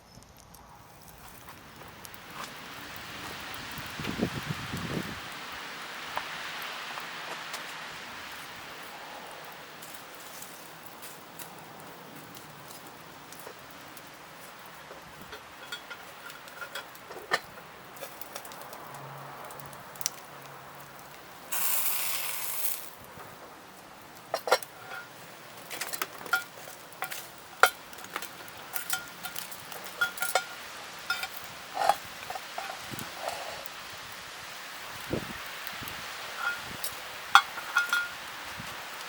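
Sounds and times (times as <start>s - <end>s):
steady sizzle: 0.0s - 39.0s
metal cookware clinking: 15.3s - 17.5s, 25.9s - 32.8s, 36.4s - 36.7s, 37.4s - 38.2s.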